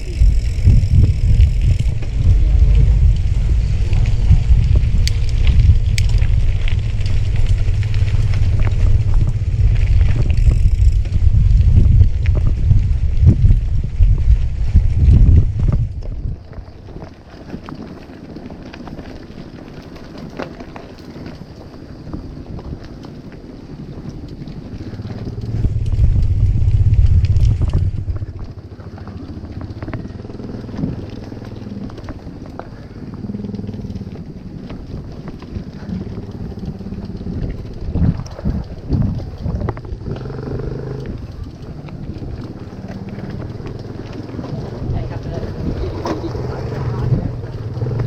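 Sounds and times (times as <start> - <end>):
motor vehicle passing: 0.0 - 11.9, 35.8 - 48.0
light clicks and rattles: 0.0 - 12.4
road noise: 0.0 - 48.0
wind buffeting microphone: 0.0 - 48.0.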